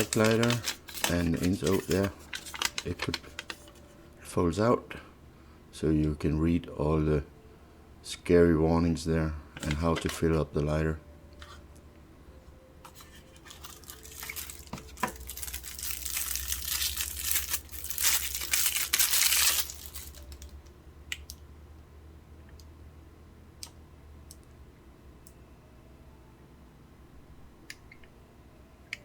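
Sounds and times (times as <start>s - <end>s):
paper rustling and crinkling: 0.0s - 4.0s, 12.9s - 20.5s.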